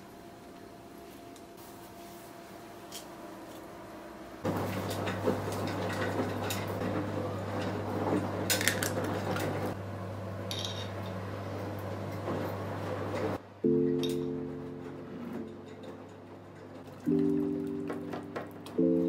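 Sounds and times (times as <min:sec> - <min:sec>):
dishes and cutlery clinking: 0:15.2 - 0:17.2.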